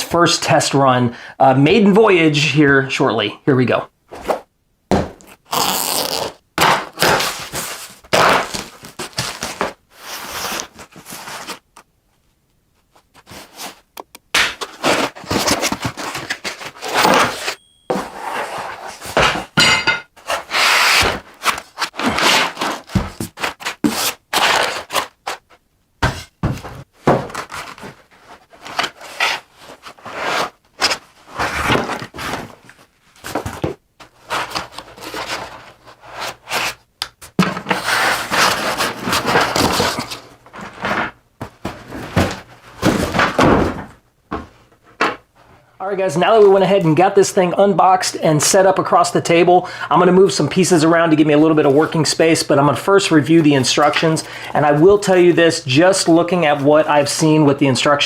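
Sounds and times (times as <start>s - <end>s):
packaging scraping and rustling: 5.9s - 11.6s, 14.6s - 19.4s, 20.2s - 25.6s, 27.1s - 36.8s, 37.5s - 43.4s.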